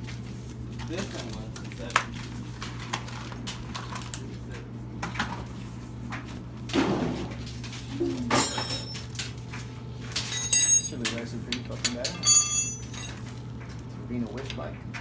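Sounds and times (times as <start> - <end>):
short metallic clink: 8.4 - 9.0, 10.2 - 11.2, 11.8 - 13.2
hand tools clicking and knocking: 10.2 - 11.1, 11.8 - 13.2.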